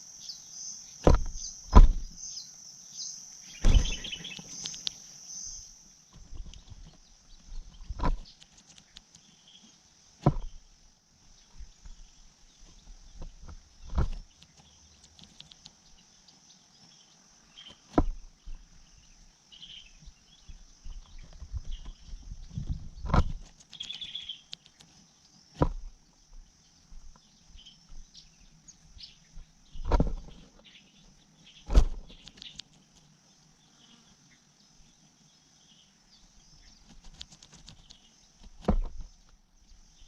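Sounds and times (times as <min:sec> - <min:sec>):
high-pitched insect drone: 0:00.0 - 0:06.1
faint chirps: 0:00.0 - 0:38.4
sharp thumps: 0:01.0 - 0:02.2, 0:03.6 - 0:04.1, 0:10.2 - 0:10.6.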